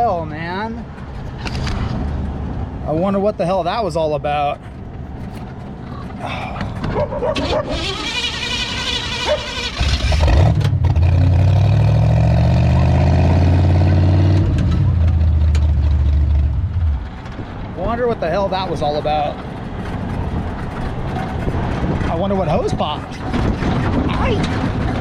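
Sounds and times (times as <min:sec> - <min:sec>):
engine running with low drone: 0:04.5 - 0:25.0
engine starter whining: 0:06.8 - 0:11.0.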